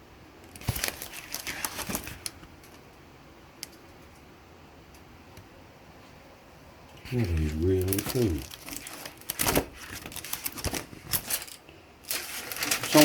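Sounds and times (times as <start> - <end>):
book pages rustling and turning: 0.5 - 2.8, 7.0 - 13.0.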